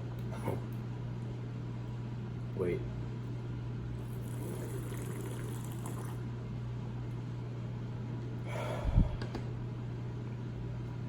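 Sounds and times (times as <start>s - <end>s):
low electrical hum: 0.0s - 11.0s
liquid pouring into a glass: 4.2s - 6.2s.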